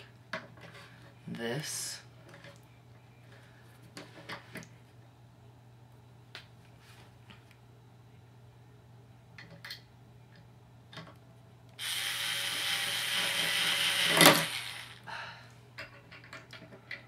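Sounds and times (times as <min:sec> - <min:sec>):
power drill drilling: 0:11.8 - 0:15.0.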